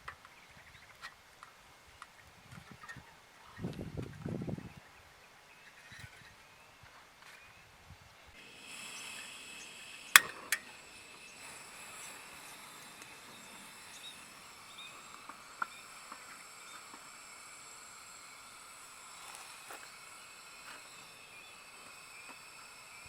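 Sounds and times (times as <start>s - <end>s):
high insect chirring: 8.4s - 23.0s
small ticks: 10.1s - 23.0s.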